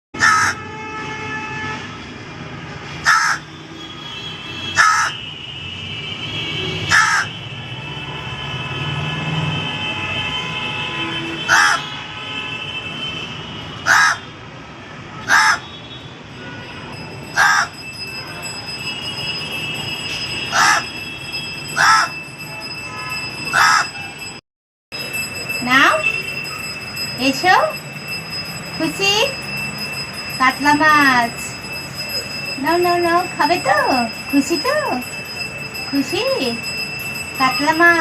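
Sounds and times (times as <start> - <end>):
crow cawing: 0.2 - 0.6, 3.0 - 3.5, 4.8 - 5.2, 6.9 - 7.4, 11.5 - 11.9, 13.8 - 14.3, 15.2 - 15.7, 17.4 - 17.8, 20.5 - 20.9, 21.8 - 22.1, 23.5 - 24.0.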